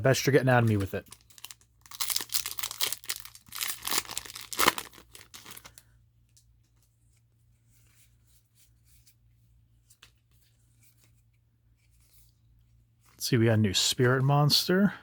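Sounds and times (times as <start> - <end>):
foil wrapper tearing and crinkling: 0.6 - 5.8.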